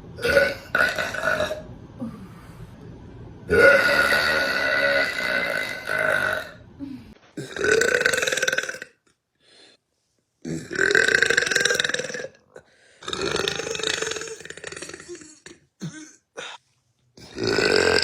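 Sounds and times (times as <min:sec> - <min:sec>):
woman burping: 0:03.5 - 0:09.0, 0:10.4 - 0:16.6.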